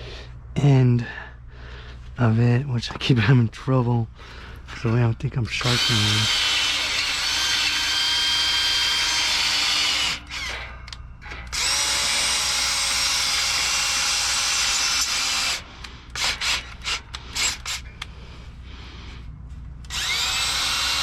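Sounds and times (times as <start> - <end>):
electric drill boring into steel: 5.5 - 18.0, 19.9 - 21.0.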